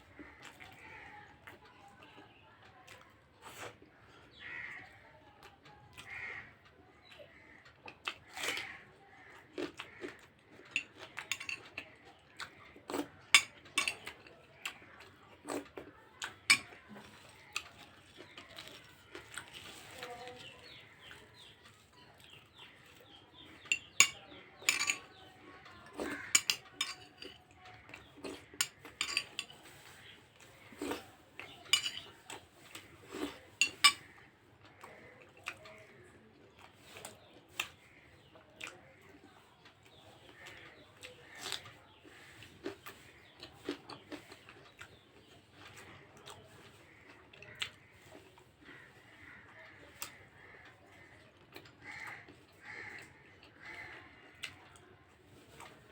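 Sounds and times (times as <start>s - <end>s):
utensil clinking on plate: 10.8s - 11.7s, 13.3s - 14.2s, 16.5s - 16.8s, 23.6s - 25.2s, 26.3s - 27.4s, 28.6s - 29.7s, 31.6s - 32.2s, 33.6s - 34.0s.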